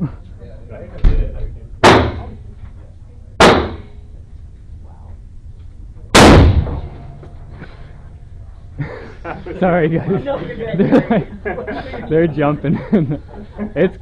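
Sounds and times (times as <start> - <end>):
gunshots with echo: 6.2 - 7.1.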